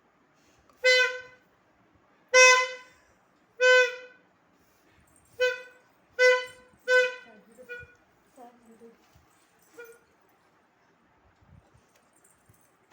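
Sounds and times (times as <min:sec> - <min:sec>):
toy wind instrument toots: 0:00.8 - 0:01.3, 0:02.4 - 0:02.9, 0:03.6 - 0:04.1, 0:05.4 - 0:08.0.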